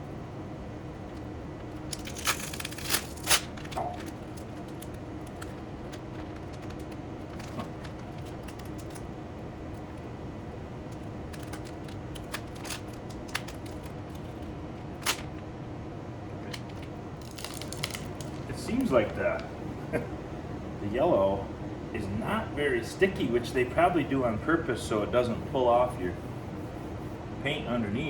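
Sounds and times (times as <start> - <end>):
steady background hum: 0.0 - 28.0
masking tape peeling: 1.8 - 9.0, 16.7 - 19.5.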